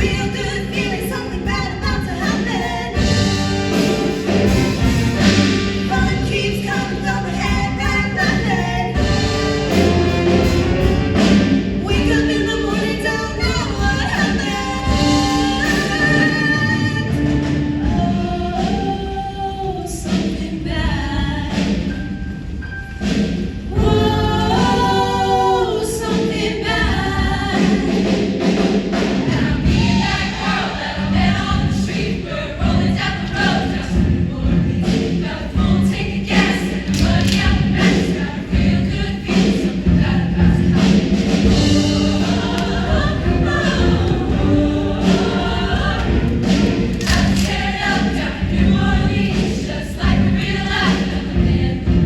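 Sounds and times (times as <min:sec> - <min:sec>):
steady beat of sharp hits: 0:00.0 - 0:15.8, 0:26.8 - 0:52.0
choir singing: 0:00.0 - 0:21.7, 0:23.7 - 0:52.0
backing music: 0:00.0 - 0:52.0.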